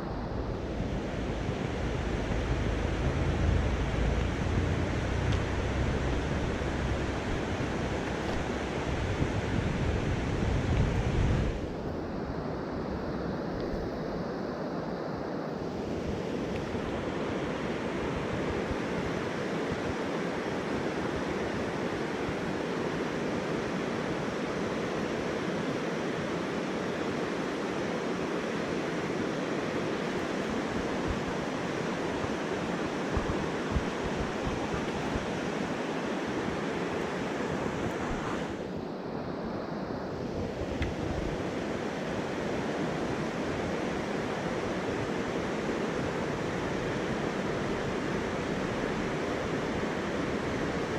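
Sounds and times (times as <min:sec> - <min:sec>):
stream water rushing: 0:00.0 - 0:50.9.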